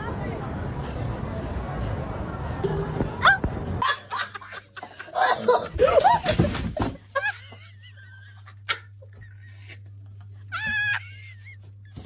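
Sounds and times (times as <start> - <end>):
wavering animal-like cries: 10.5 - 11.6.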